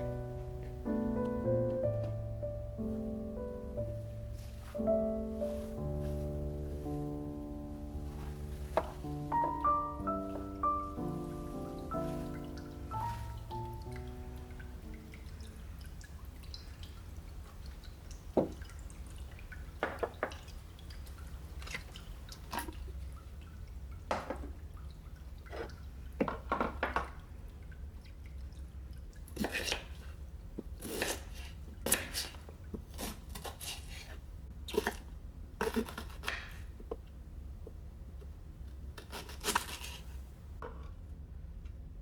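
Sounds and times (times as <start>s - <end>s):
low steady hum: 0.0s - 30.8s.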